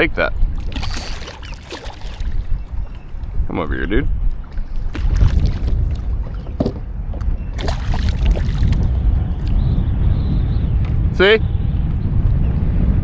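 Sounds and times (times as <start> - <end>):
wind rumble on microphone: 0.0 - 13.0
water sloshing: 0.4 - 10.0
knocks against a kayak: 4.9 - 8.9.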